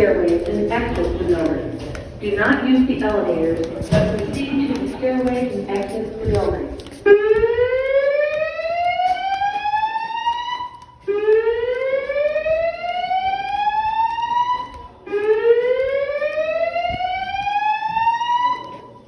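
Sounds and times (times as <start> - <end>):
fire alarm whoop tone: 7.2 - 19.0.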